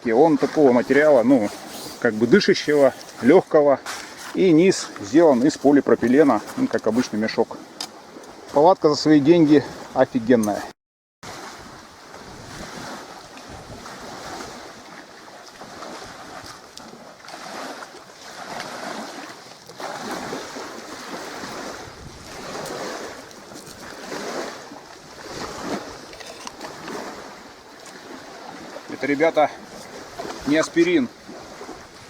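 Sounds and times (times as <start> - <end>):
small waves washing on shore: 0.0 - 32.0
wind noise on microphone: 11.3 - 14.9, 19.8 - 28.2.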